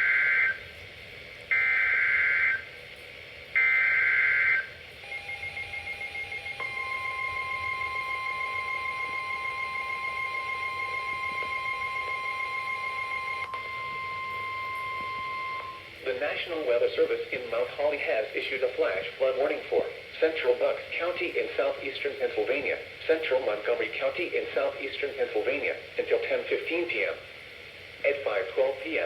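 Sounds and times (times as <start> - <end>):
steady alarm tone: 0.0 - 0.7, 1.5 - 2.7, 3.6 - 16.0
fast-pulsing high alarm beep: 3.6 - 15.9
digital data bursts: 5.3 - 15.9.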